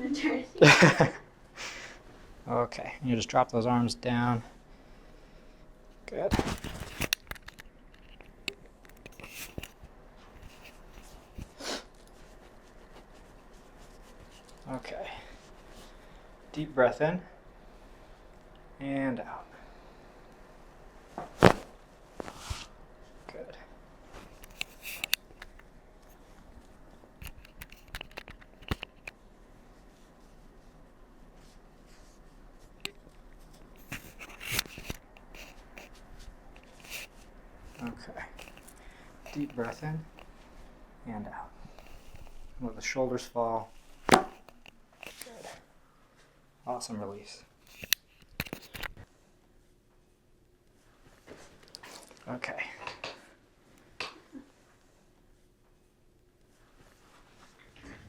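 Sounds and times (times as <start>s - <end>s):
hands and clothing rustling: 6.0s - 16.3s, 20.9s - 23.3s, 24.0s - 40.8s, 56.4s - 58.0s.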